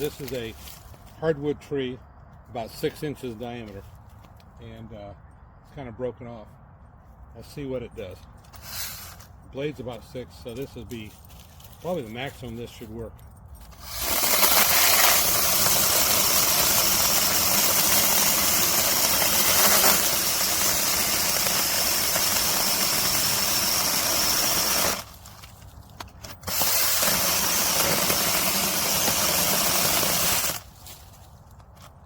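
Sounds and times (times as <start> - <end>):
chainsaw cutting wood: 13.7 - 25.5, 26.1 - 30.8.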